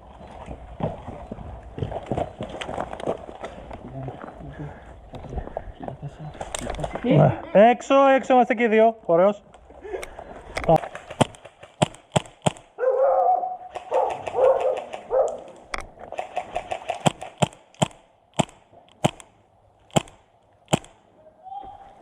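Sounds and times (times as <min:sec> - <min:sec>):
airsoft guns firing: 0:10.8 - 0:12.8, 0:13.7 - 0:15.4, 0:16.1 - 0:21.0.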